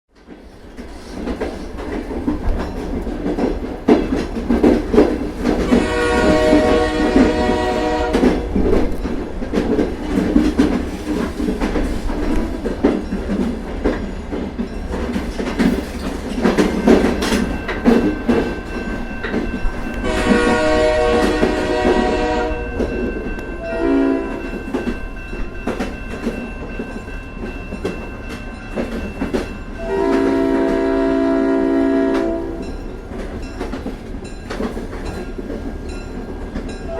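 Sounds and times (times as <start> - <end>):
train rumbling on rails: 0.1 - 36.9
train wheel clatter: 0.1 - 36.9
train horn blasts: 5.6 - 8.7, 19.9 - 24.7, 29.8 - 32.7.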